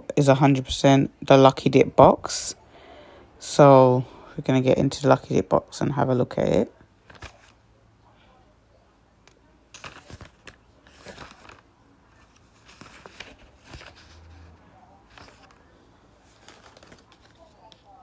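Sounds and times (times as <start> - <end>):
packaging rustling and crinkling: 7.0 - 7.6, 9.7 - 18.0.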